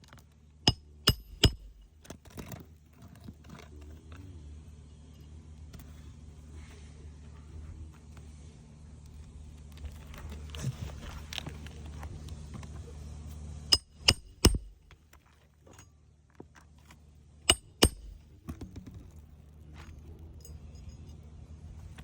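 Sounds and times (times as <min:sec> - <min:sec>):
hammer striking nails: 0:00.7 - 0:01.9, 0:13.7 - 0:14.8, 0:17.5 - 0:18.2.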